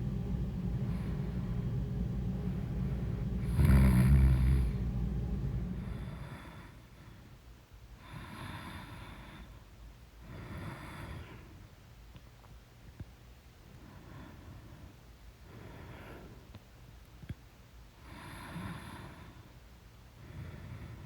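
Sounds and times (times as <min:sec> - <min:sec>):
person snoring: 0:03.4 - 0:04.9.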